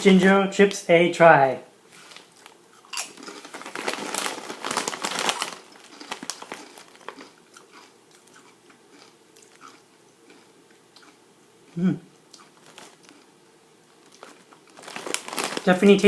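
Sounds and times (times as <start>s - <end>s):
crunching potato chips: 2.0s - 16.0s
soft chewing: 5.3s - 15.6s.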